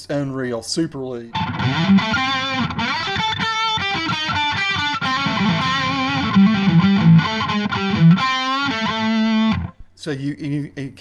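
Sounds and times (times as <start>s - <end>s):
distorted electric guitar lead: 1.3s - 9.7s.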